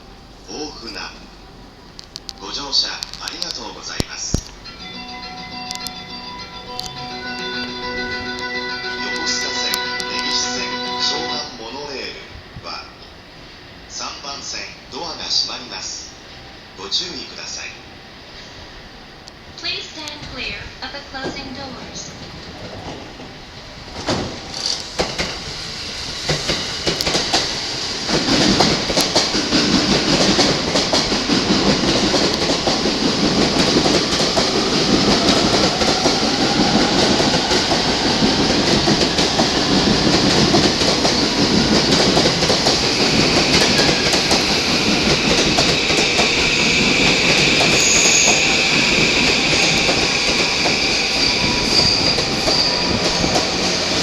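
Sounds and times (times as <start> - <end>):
train rumble: 0.0 - 54.0
wheels clicking over rail joints: 21.2 - 54.0
train motor whine: 23.6 - 32.5, 33.6 - 54.0
high wheel squeal: 24.3 - 26.9, 41.1 - 54.0.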